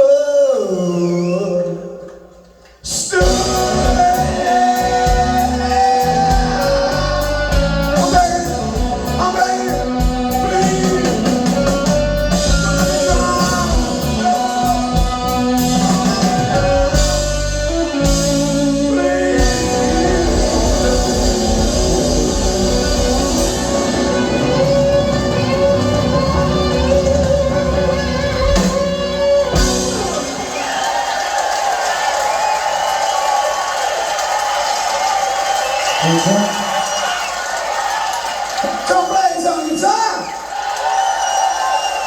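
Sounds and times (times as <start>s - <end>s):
live rock band playing: 2.9s - 33.0s.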